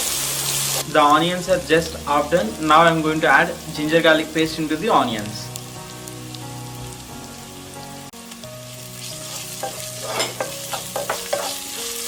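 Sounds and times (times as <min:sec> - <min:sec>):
onions sizzling in oil: 0:00.0 - 0:12.0
spatula scraping a pan: 0:09.0 - 0:12.0.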